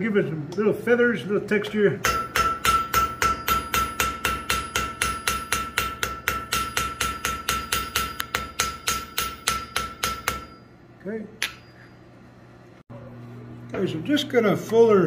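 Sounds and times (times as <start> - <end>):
hammer striking steel on anvil: 2.0 - 10.7, 11.4 - 12.0.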